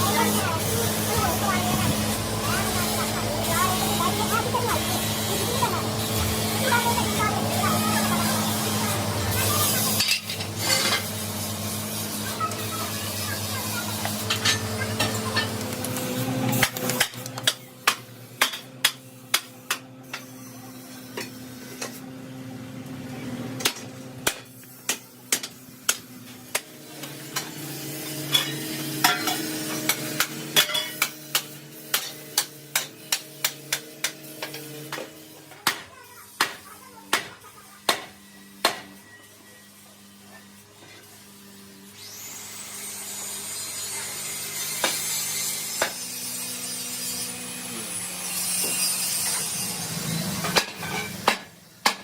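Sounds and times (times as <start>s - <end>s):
steady machine hum: 0.0s - 35.6s.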